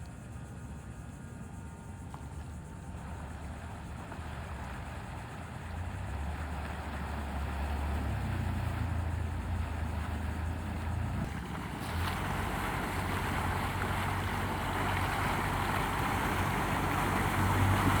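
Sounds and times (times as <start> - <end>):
boat engine low hum: 0.0 - 18.0
surf noise: 11.2 - 18.0.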